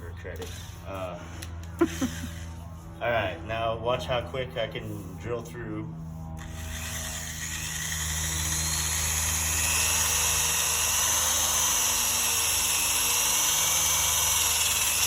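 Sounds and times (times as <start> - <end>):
electric drill boring through metal: 6.4 - 15.0.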